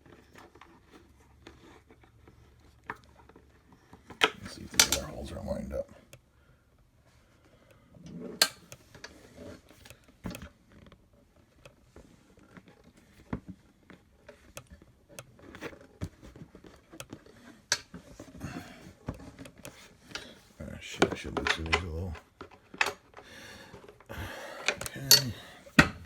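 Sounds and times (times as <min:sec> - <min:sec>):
metal parts clicking and knocking: 0:04.1 - 0:05.3, 0:21.0 - 0:26.0.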